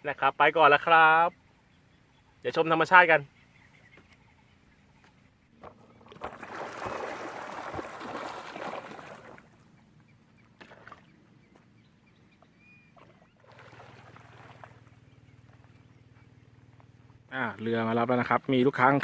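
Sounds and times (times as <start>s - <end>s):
boat engine humming: 0.2s - 19.0s
water splashing and rushing: 5.6s - 9.6s, 13.0s - 15.0s.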